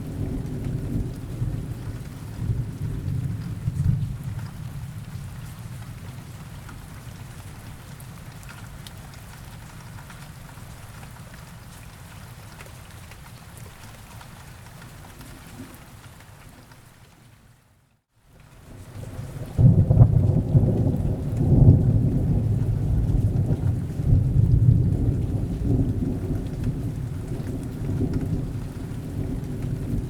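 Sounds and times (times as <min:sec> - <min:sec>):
steady rain falling: 0:00.0 - 0:30.0
low thunder rumble: 0:19.0 - 0:30.0.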